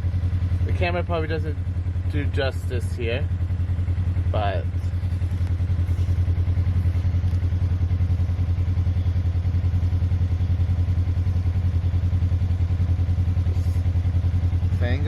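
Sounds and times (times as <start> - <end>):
engine running with low hum: 0.0 - 15.0.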